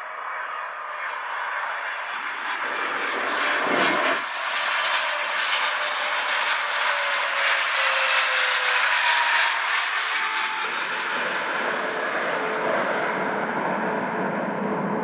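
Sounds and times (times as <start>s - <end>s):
jet aircraft passing overhead: 0.0s - 15.0s
jet engine whine falling: 0.0s - 15.0s
wind buffeting microphone: 12.3s - 15.0s.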